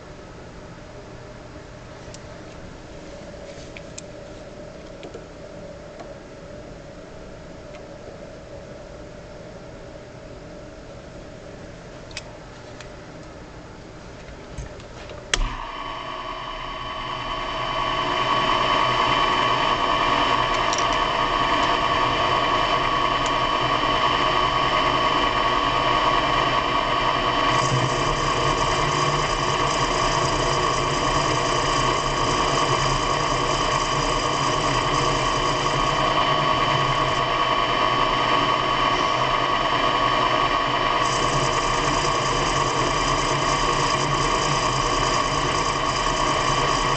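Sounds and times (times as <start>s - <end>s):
motor switch click: 15.3s - 15.6s
machine motor whining: 15.3s - 46.9s
high hiss: 15.4s - 46.9s.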